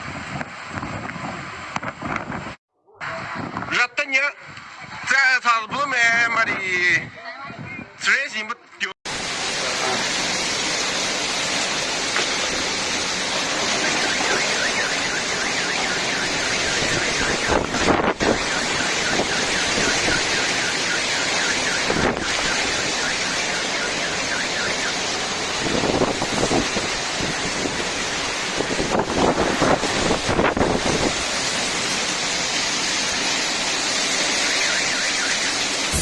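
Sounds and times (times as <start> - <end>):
storm wind on microphone: 0.0 - 8.1, 9.1 - 34.5
faint car alarm: 13.6 - 25.1, 34.4 - 36.0.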